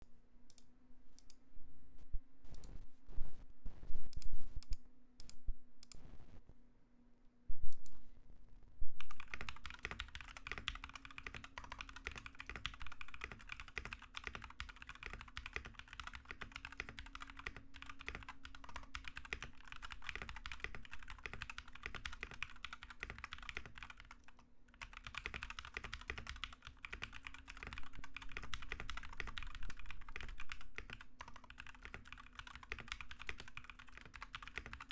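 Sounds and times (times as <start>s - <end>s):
mechanical keyboard typing: 9.0s - 34.9s.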